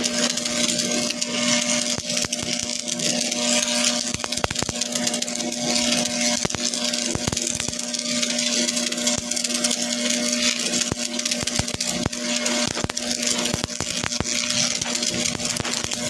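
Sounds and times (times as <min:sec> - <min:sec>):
arc welding crackling hiss: 0:00.0 - 0:16.0.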